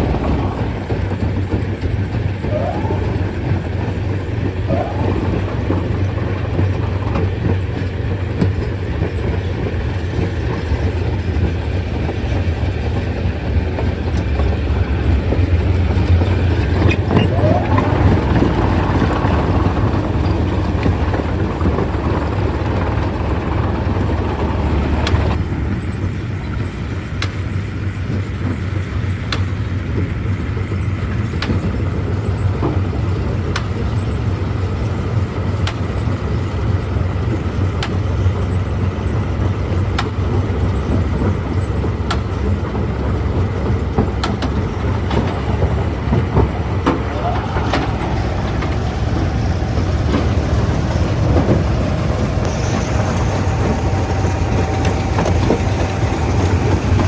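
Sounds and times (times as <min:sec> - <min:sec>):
short rising squeaks: 0:00.0 - 0:07.3, 0:15.8 - 0:25.4, 0:44.8 - 0:57.0
stone-crushing machinery rumbling: 0:00.0 - 0:25.5, 0:38.9 - 0:57.0.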